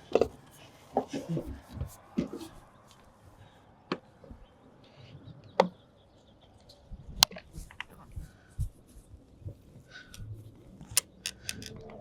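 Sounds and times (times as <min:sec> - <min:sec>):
tools clicking and knocking: 0:10.8 - 0:11.8.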